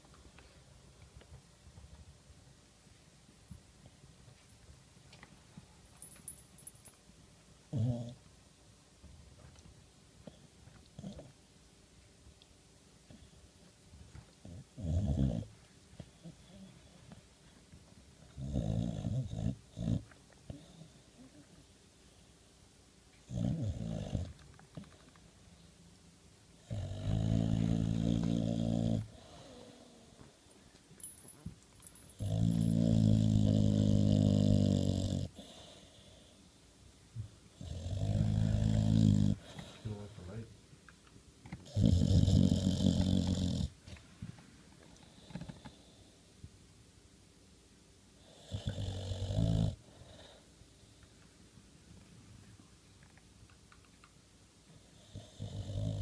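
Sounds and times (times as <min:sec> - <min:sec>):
dog snoring and grumbling: 0:07.7 - 0:08.2, 0:11.0 - 0:11.4, 0:14.4 - 0:15.5, 0:18.3 - 0:20.8, 0:23.2 - 0:24.4, 0:26.6 - 0:30.1, 0:32.2 - 0:35.8, 0:37.6 - 0:40.4, 0:41.6 - 0:43.8, 0:48.2 - 0:50.4, 0:55.0 - 0:56.0.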